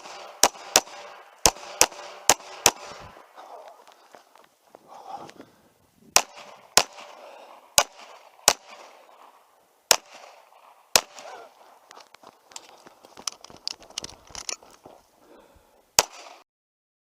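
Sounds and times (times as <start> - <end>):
handgun shots: 0.0 - 3.2, 6.2 - 7.2, 7.8 - 9.0, 9.9 - 11.5, 16.0 - 16.4.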